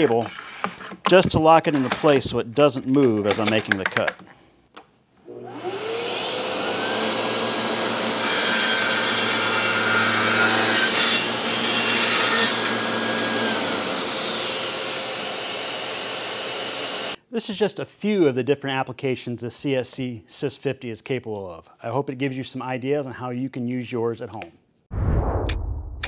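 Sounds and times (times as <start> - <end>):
table saw cutting board: 5.2 - 17.2.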